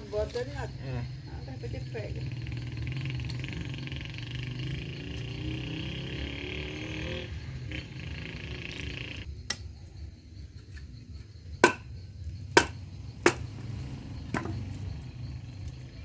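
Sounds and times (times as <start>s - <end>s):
sharp impacts: 11.6s - 11.9s.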